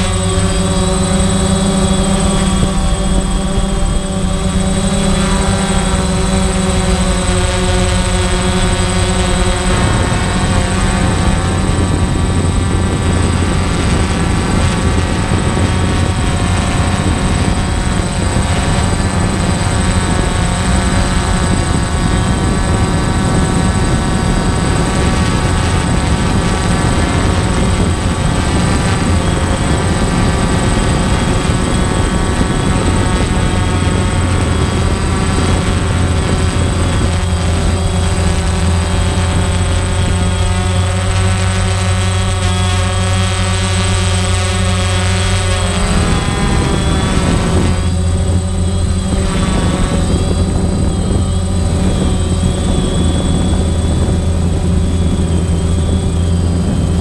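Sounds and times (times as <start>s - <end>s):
drone propellers buzzing: 0.0s - 57.0s.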